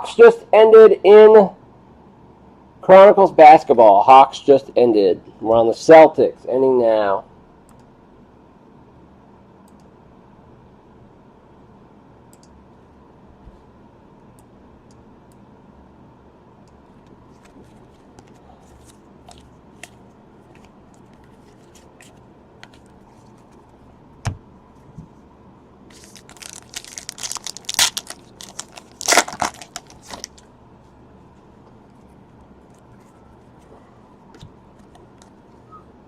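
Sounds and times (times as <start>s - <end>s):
foil wrapper crinkling: 25.9s - 30.4s.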